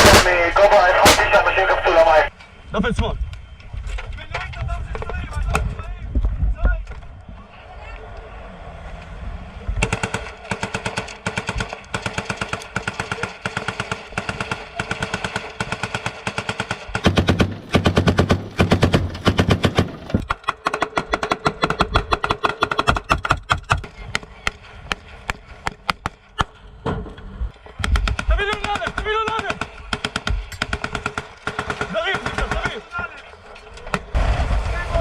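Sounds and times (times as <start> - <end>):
machine-gun fire: 0.0 - 1.4, 9.8 - 20.1, 27.9 - 32.8.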